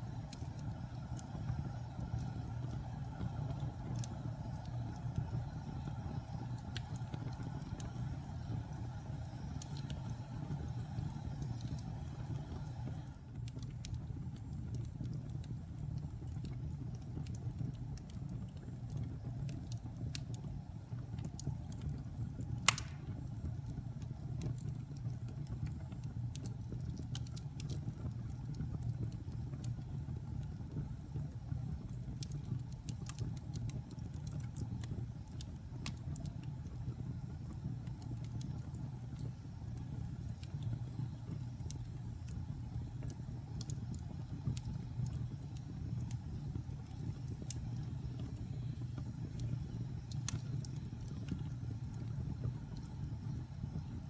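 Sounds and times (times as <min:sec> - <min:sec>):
fire crackling: 0:00.0 - 0:54.0
wood fire burning: 0:00.0 - 0:54.0
loud sharp pop: 0:22.7 - 0:23.2.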